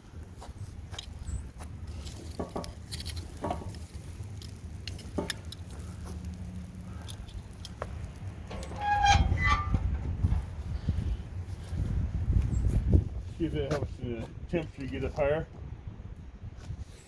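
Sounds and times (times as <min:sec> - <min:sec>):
knocks and clicks tending fire: 0:00.1 - 0:11.6, 0:13.4 - 0:15.7
low rumble: 0:08.0 - 0:12.2
short squeak: 0:08.5 - 0:10.0.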